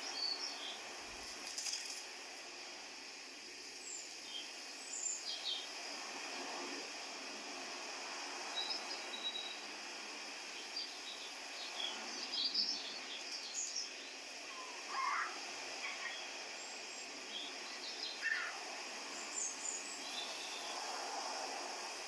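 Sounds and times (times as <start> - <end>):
steady background hiss: 0.0 - 22.0
birds chirping: 10.5 - 20.8.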